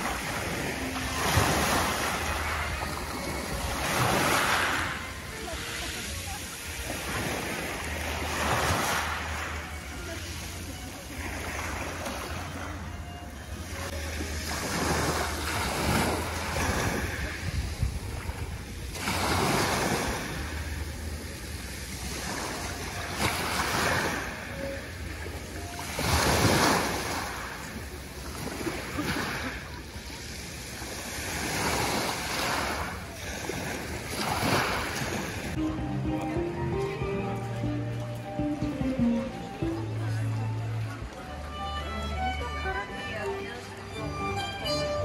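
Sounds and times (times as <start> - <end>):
sea waves breaking on shore: 0.0 - 36.3
wind rumble on microphone: 15.9 - 21.4.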